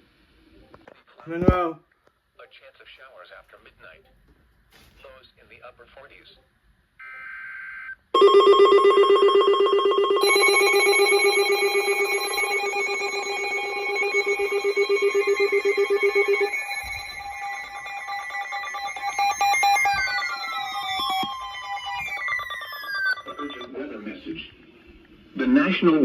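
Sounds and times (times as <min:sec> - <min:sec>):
electronic alert tones warbling: 0:08.2 - 0:23.7.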